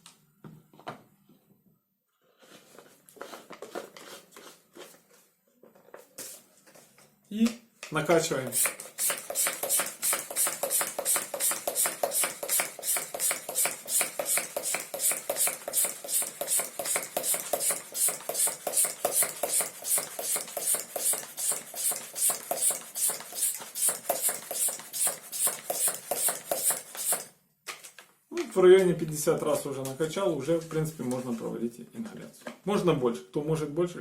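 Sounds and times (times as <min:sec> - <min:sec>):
hand pump strokes with air hiss: 0:08.5 - 0:27.3.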